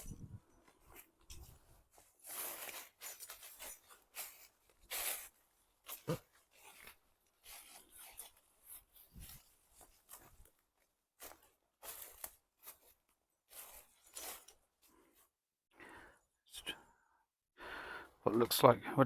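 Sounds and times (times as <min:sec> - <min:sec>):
footsteps crunching through leaves: 0:02.0 - 0:06.8, 0:11.2 - 0:14.5.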